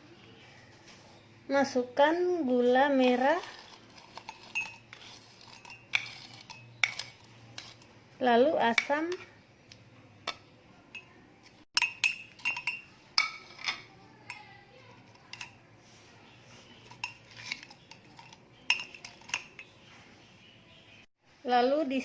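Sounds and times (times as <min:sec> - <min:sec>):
spoon clinking against glass: 0:04.2 - 0:07.8, 0:11.8 - 0:14.6, 0:16.8 - 0:19.8.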